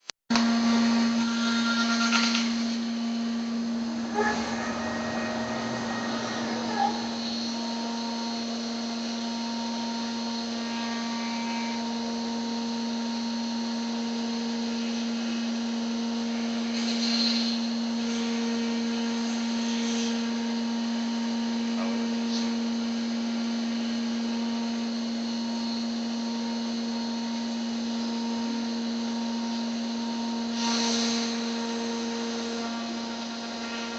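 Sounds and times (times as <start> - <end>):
router cutting noise: 0.3 - 9.1, 30.5 - 33.9
router spindle hum and whine: 0.3 - 33.9.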